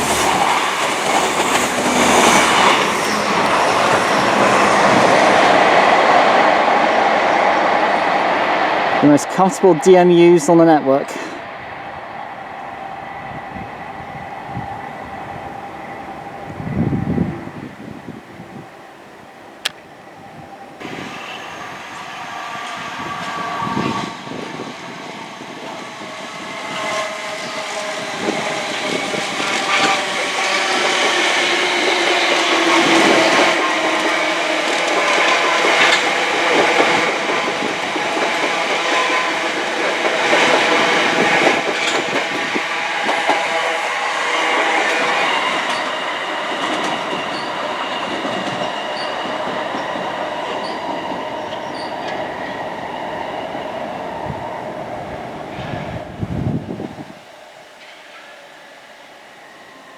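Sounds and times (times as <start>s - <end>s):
train wheels clicking over rail joints: 0.0s - 5.8s, 26.7s - 53.4s, 57.5s - 59.9s
passenger train passing: 0.0s - 59.9s.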